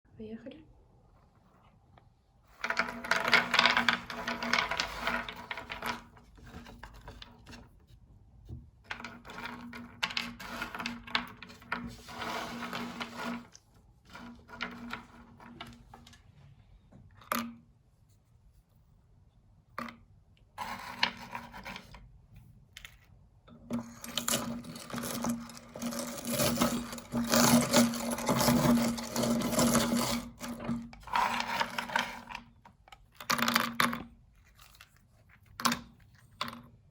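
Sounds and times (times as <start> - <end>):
candy crackling and grinding: 2.6 - 6.1, 23.8 - 32.4.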